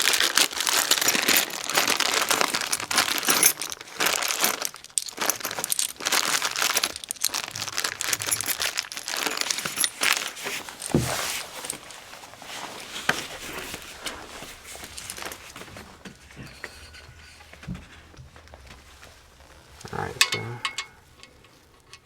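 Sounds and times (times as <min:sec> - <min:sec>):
plastic packaging crinkling: 0:00.0 - 0:16.0.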